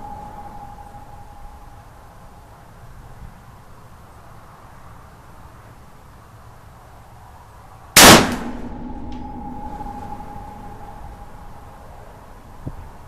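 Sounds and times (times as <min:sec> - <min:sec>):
steady ringing tone: 0:00.0 - 0:02.7, 0:08.4 - 0:13.0
gunshot: 0:08.0 - 0:08.8.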